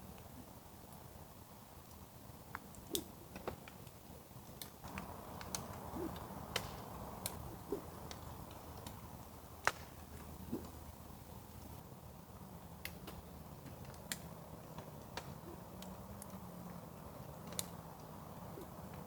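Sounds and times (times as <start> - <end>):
faint hiss: 0.0 - 19.0
light clicks of handled objects: 1.8 - 10.8, 12.8 - 19.0.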